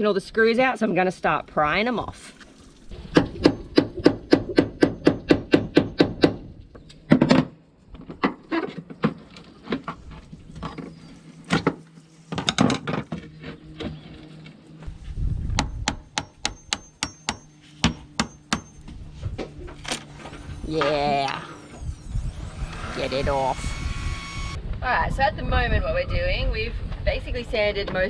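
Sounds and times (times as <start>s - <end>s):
hammer striking chisel: 15.6s - 18.9s.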